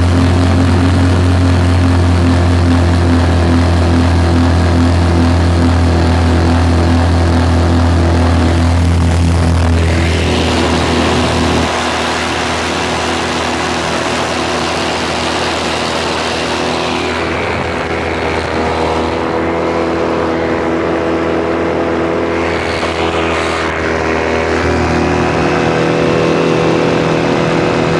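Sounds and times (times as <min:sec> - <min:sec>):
model airplane motor and propeller: 0:00.0 - 0:27.9
rushing noise: 0:01.0 - 0:27.9.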